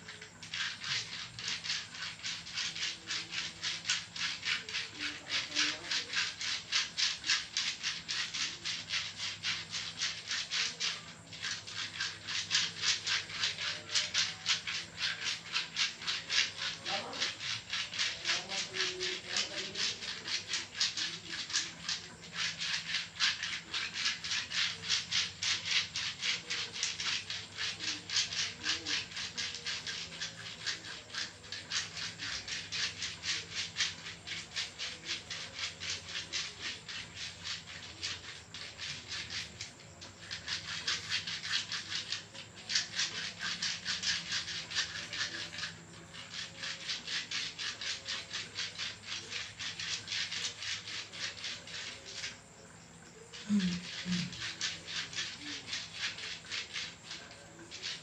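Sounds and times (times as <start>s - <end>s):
massage strokes rubbing skin: 53.3s - 57.4s.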